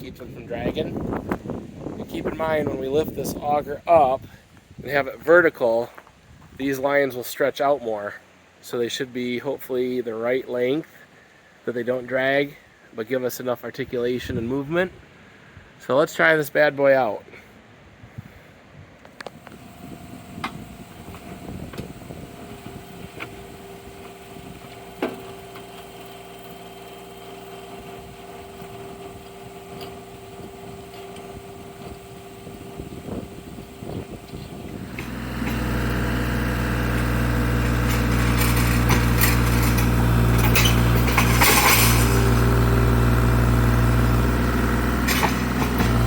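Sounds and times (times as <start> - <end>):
excavator diesel engine: 19.3 - 46.0.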